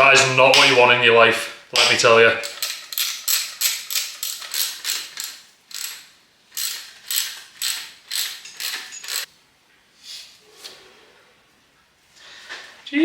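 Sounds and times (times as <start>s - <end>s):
ratchet wrench clicking: 1.8s - 9.3s.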